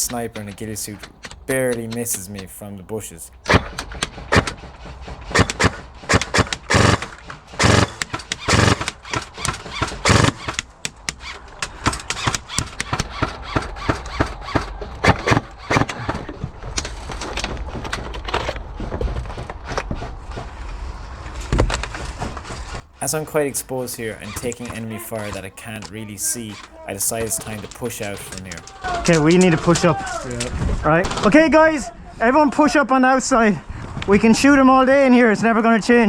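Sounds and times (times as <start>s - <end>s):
airsoft guns firing: 3.4s - 4.6s, 5.3s - 16.3s.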